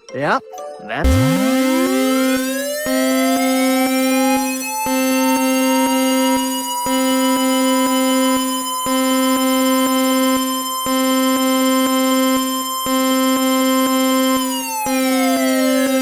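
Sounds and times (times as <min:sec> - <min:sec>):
electronic alert tone chord: 0:00.2 - 0:08.1.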